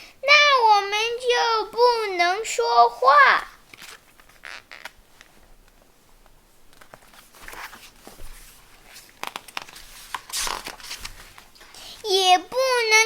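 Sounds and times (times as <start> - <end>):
faint rustles and taps: 3.6 - 11.9.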